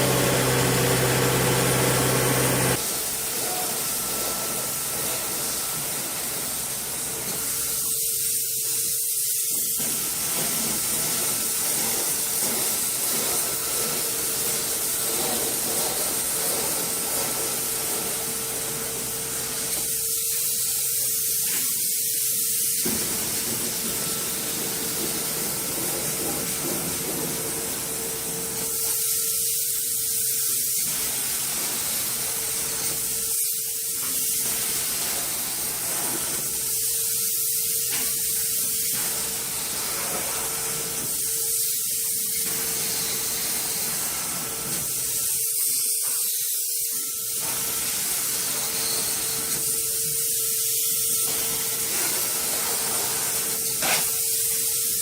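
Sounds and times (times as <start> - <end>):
steady hum: 0.0 - 2.8
spray gun hissing: 0.0 - 9.5.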